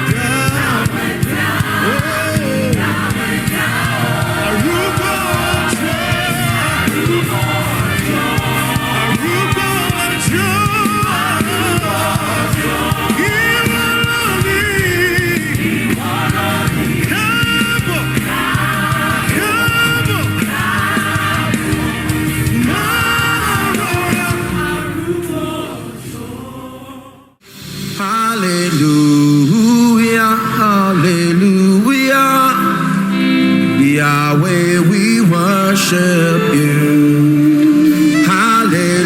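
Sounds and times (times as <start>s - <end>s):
instrumental accompaniment: 0.0s - 25.6s
choir singing gospel song: 0.0s - 39.0s.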